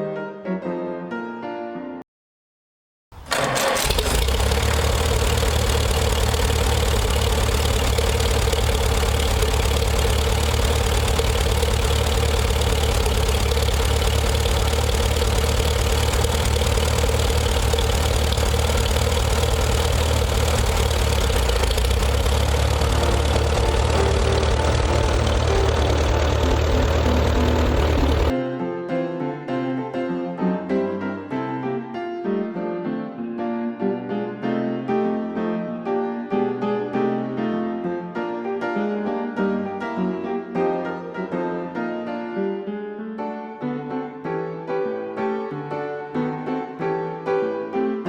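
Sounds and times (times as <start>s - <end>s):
engine idling: 3.2s - 28.3s.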